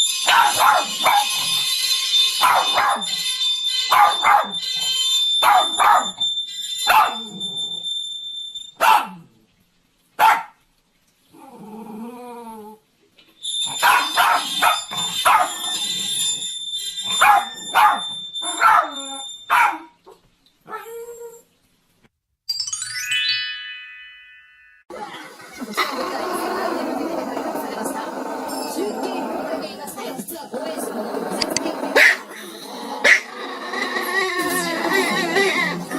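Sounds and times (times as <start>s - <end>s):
steady high-pitched tone: 0.0s - 7.9s
dog barking: 0.3s - 1.4s, 2.4s - 3.2s, 3.9s - 4.6s, 5.4s - 6.2s, 6.8s - 7.4s, 8.8s - 9.2s, 10.2s - 10.6s, 13.7s - 15.8s, 17.1s - 20.0s, 31.9s - 32.3s, 33.0s - 33.3s
dog whining: 0.3s - 8.0s, 13.4s - 19.8s, 20.7s - 21.5s, 25.8s - 35.9s.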